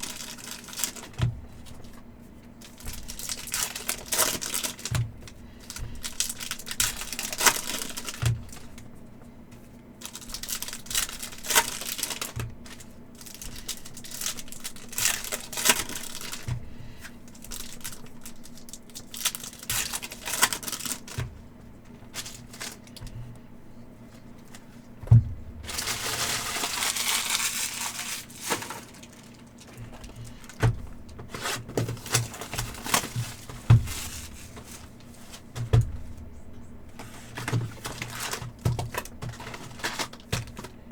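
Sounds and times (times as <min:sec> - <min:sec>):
foil wrappers crinkling and tearing: 0:00.0 - 0:08.9, 0:09.9 - 0:23.2, 0:25.6 - 0:36.2, 0:36.9 - 0:40.9
packs knocking on table: 0:25.0 - 0:27.9, 0:29.7 - 0:34.8, 0:35.6 - 0:36.3, 0:37.4 - 0:40.8.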